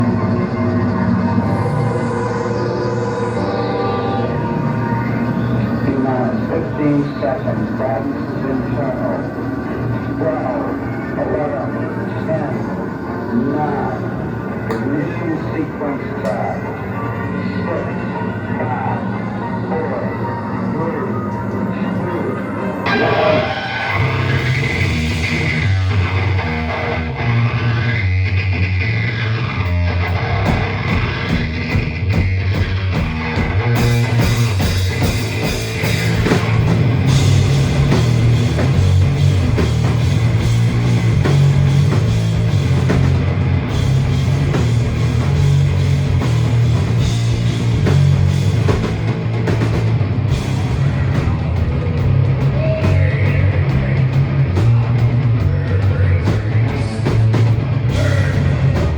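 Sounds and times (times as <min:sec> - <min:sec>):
bass guitar riff: 0:00.0 - 0:06.8, 0:22.8 - 0:58.9
electric guitar riff: 0:00.0 - 0:21.6, 0:22.5 - 0:55.7
drum kit: 0:22.9 - 0:58.9.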